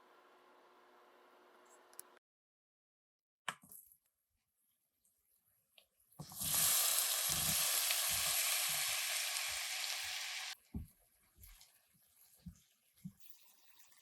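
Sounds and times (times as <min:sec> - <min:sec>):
food sizzling in hot oil: 0:06.2 - 0:10.6.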